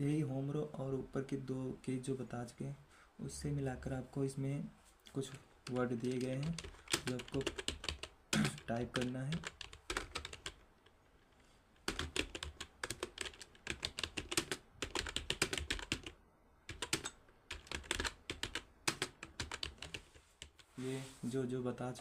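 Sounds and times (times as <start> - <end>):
typing on computer keyboard: 5.6 - 10.6, 11.8 - 20.7.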